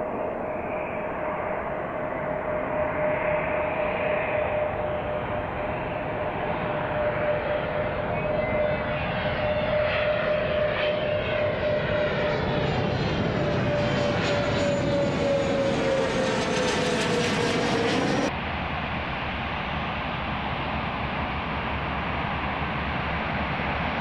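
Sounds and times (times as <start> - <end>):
jet engines roaring: 0.0 - 24.0.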